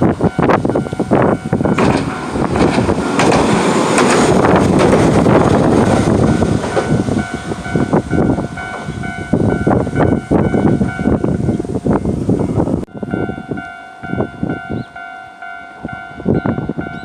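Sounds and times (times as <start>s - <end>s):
crossing warning bell ringing: 0.0s - 11.6s, 12.9s - 17.0s
tram wheels and motor: 0.0s - 11.6s.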